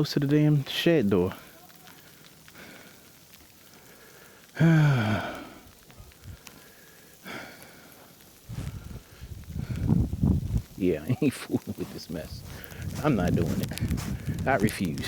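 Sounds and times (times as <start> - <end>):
faint steady hiss: 0.0 - 15.0
man groaning: 4.6 - 5.4
low rumbling: 8.5 - 10.8, 11.7 - 15.0.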